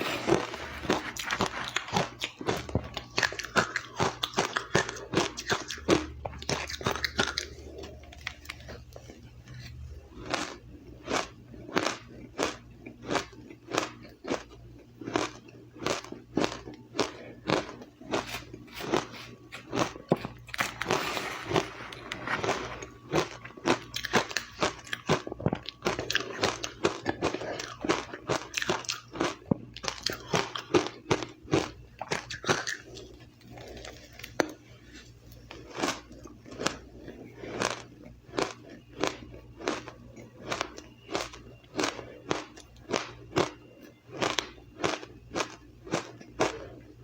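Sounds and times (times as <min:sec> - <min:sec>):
person crunching ice: 0:00.0 - 0:03.5, 0:10.2 - 0:29.3.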